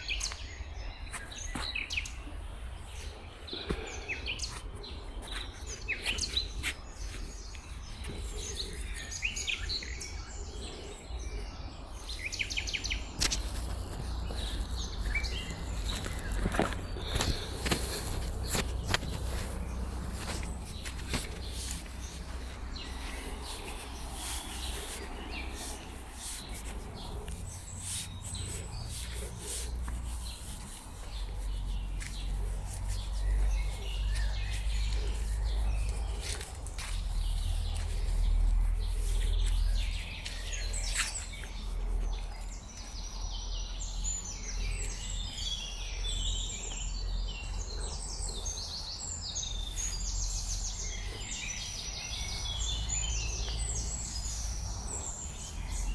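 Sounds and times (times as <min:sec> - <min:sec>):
songbirds chirping: 0:00.0 - 0:55.9
steady low rumble: 0:04.6 - 0:43.4.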